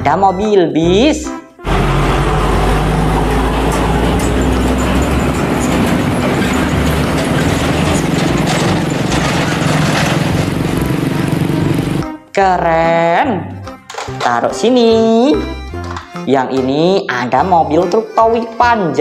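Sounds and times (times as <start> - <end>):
large vehicle engine rumbling: 1.6 - 12.1.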